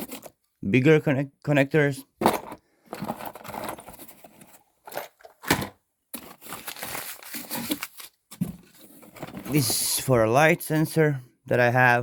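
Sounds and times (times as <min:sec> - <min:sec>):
small electronic parts clattering: 0:02.2 - 0:08.0.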